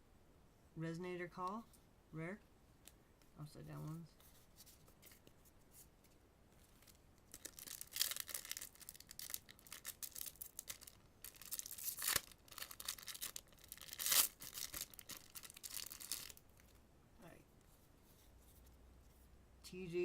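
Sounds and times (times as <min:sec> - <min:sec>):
foil pack crinkling: 0:06.7 - 0:16.8
foil pack ripping: 0:07.3 - 0:16.4.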